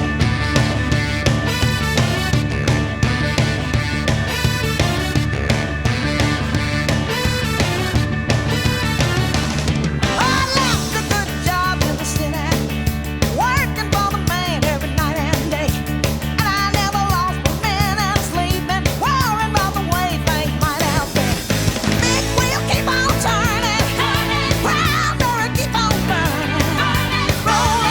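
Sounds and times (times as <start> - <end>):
rock music with singing: 0.0 - 27.9.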